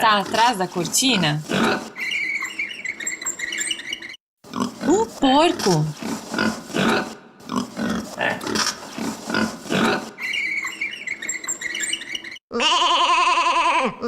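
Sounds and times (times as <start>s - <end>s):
pig grunting: 0.0s - 1.9s, 4.5s - 10.2s
sheep bleating: 12.5s - 14.0s.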